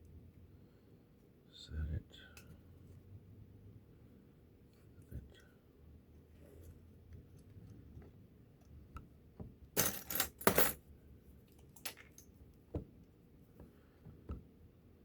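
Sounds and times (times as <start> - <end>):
metal tools clinking: 9.8 - 10.8.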